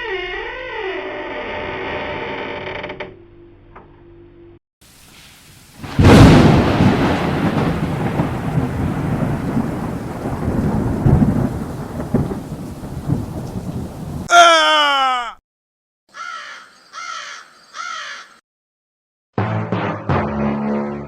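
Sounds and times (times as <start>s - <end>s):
rolling thunder: 5.8s - 14.3s
crow cawing: 16.1s - 18.4s.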